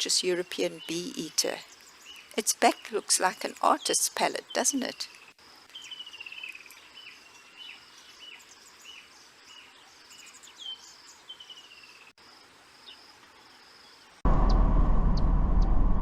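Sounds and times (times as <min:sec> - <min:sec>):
loud low rumble: 0:14.3 - 0:16.0.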